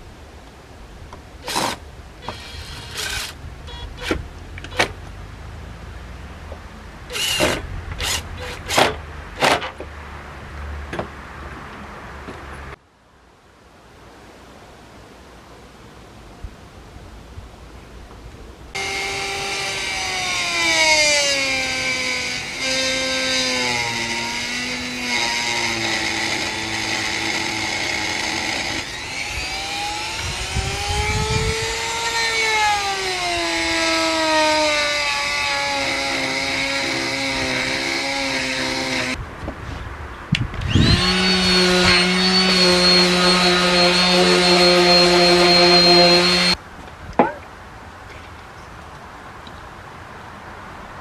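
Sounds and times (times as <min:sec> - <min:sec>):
electric power tool motor: 0:18.8 - 0:39.2, 0:40.6 - 0:46.6.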